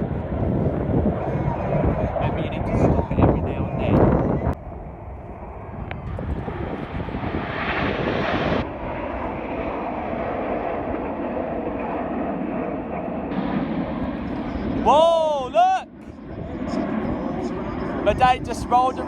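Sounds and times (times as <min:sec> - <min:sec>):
jet aircraft flying past: 0:00.0 - 0:19.0.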